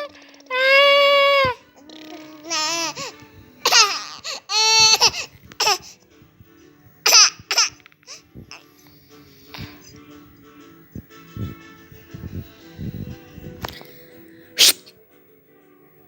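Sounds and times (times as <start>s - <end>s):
babies squealing and laughing: 0.0s - 5.8s
faint background music: 0.0s - 16.0s.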